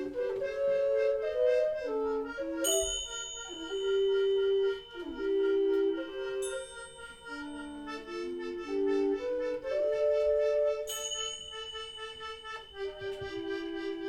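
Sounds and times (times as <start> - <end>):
reedy sustained melody: 0.0 - 14.0
bright bell-like ding: 2.7 - 5.1.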